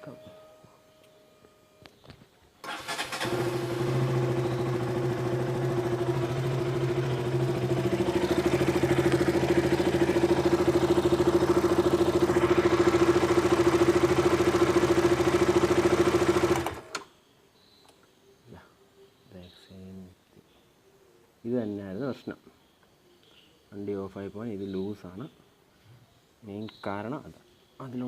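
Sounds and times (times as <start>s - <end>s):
motorcycle engine starting: 2.6s - 17.0s
motorcycle engine idling: 2.7s - 17.0s.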